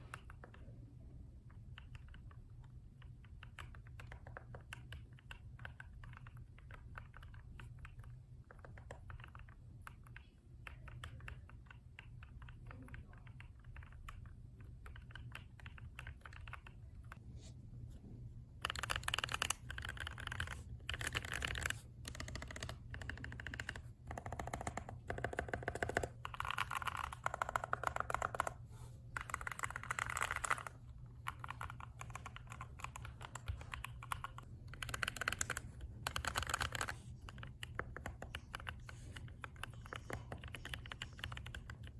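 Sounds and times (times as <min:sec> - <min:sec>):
steady low hum: 0:00.0 - 0:41.9
mechanical keyboard typing: 0:01.5 - 0:17.2, 0:18.6 - 0:41.9.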